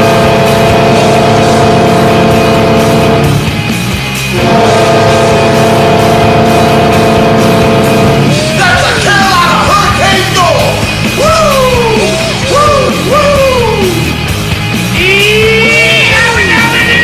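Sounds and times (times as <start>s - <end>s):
arena goal horn: 0.0s - 3.6s, 4.2s - 9.4s
rock song with shouted singing: 8.1s - 17.0s.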